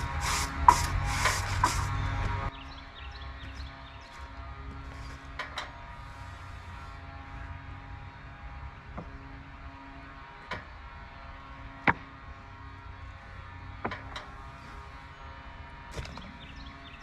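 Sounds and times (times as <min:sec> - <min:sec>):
low hum: 0:00.0 - 0:17.0
wooden boards knocking: 0:00.3 - 0:02.4.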